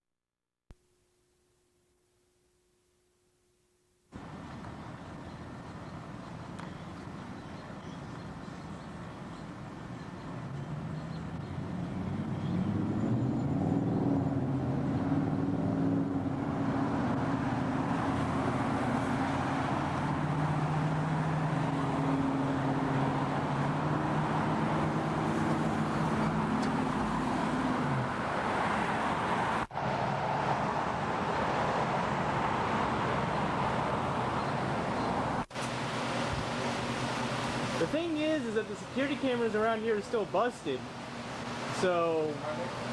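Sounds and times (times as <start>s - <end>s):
traffic noise: 4.1s - 42.9s
vehicle engine running: 4.2s - 28.4s.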